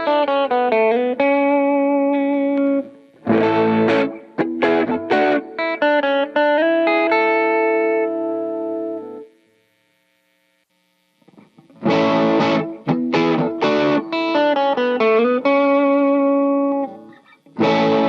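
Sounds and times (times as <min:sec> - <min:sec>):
electric guitar through an amp: 0:00.0 - 0:09.6, 0:11.2 - 0:18.0.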